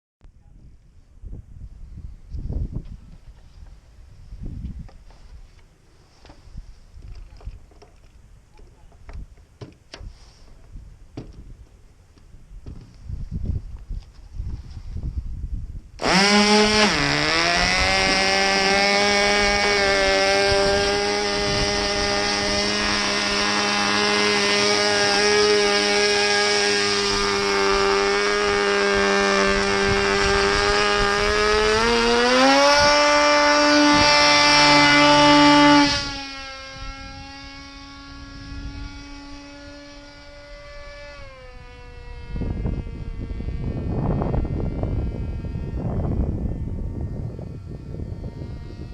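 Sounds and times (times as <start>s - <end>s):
model airplane motor whine: 15.9s - 48.9s.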